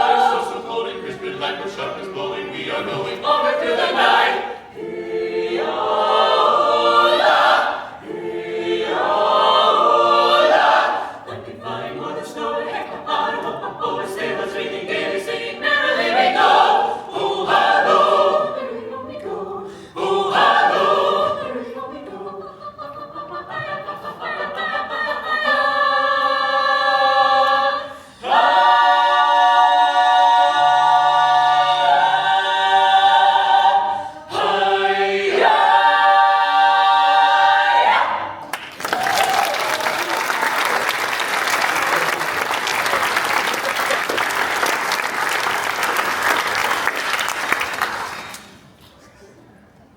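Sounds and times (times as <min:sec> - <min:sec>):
choir singing a cappella: 0:00.0 - 0:38.5.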